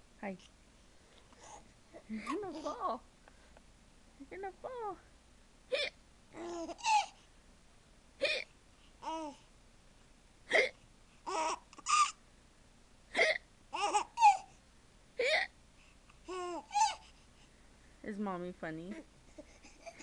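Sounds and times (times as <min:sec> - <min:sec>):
baby laughing: 0:06.4 - 0:07.2, 0:11.3 - 0:12.2, 0:13.2 - 0:14.5, 0:16.3 - 0:17.0, 0:19.3 - 0:20.0.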